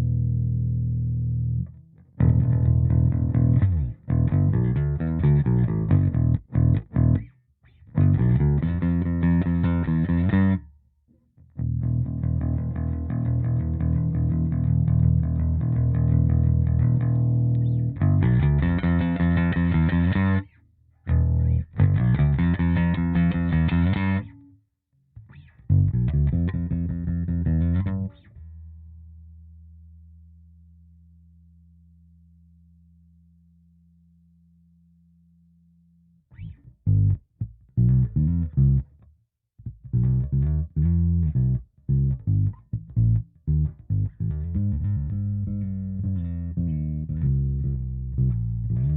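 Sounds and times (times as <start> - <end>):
faint held low bass tone: 0.0 - 7.3, 11.5 - 20.5
electric bass riff: 0.0 - 10.7, 11.5 - 24.6, 25.2 - 30.0, 36.3 - 48.9.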